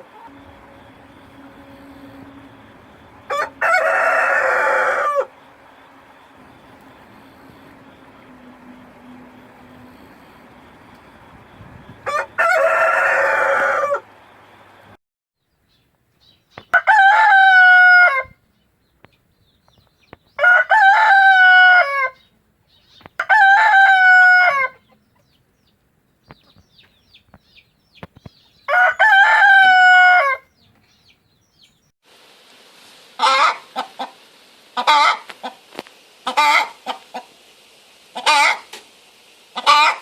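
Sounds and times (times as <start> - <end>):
rooster crowing: 0.0 - 6.0, 12.0 - 14.3, 16.7 - 18.4, 20.4 - 22.2, 23.2 - 24.8, 28.7 - 30.5, 33.2 - 34.1, 34.8 - 35.3, 36.2 - 37.0, 38.2 - 38.7, 39.6 - 40.0
harsh chicken call: 3.2 - 5.4, 12.0 - 14.1, 16.8 - 18.4, 20.4 - 22.2, 23.2 - 24.9, 28.7 - 30.5, 33.2 - 34.2, 34.8 - 35.6, 36.2 - 37.3, 38.1 - 38.8, 39.5 - 40.0.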